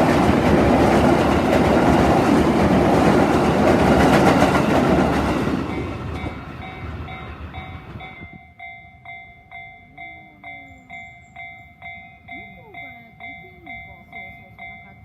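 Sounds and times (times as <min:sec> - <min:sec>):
train passing: 0:00.0 - 0:15.0
level-crossing alarm bell dinging: 0:04.6 - 0:15.0.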